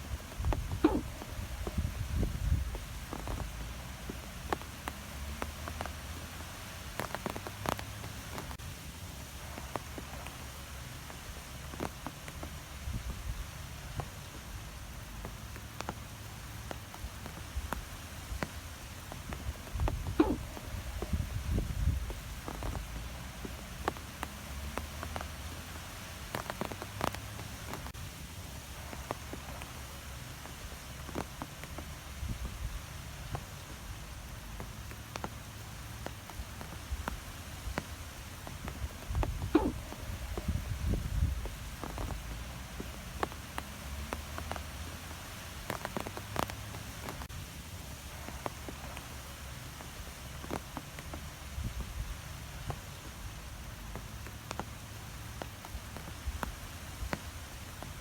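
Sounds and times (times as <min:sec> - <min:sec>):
wind blowing in trees: 0:00.0 - 0:58.0
light ticks and taps: 0:00.1 - 0:47.4, 0:48.0 - 0:58.0.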